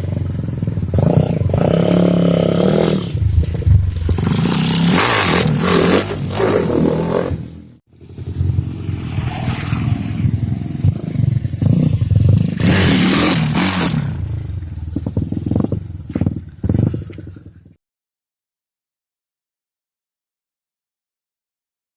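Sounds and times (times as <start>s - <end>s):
motorcycle engine revving: 0.0s - 17.6s.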